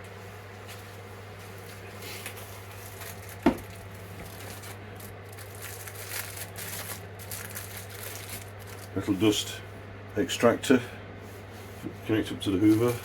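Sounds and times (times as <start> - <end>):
steady low hum: 0.0 - 13.0
tool parts and packaging rustling: 1.6 - 9.4.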